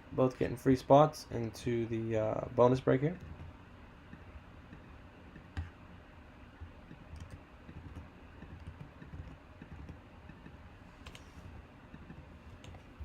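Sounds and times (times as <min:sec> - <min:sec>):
low steady hum: 0:00.0 - 0:13.0
keyboard and mouse clicks: 0:06.8 - 0:11.3, 0:11.9 - 0:12.9.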